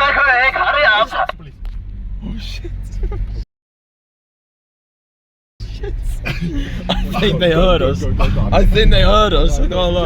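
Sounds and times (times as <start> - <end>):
low car cabin rumble: 0.0 - 1.9.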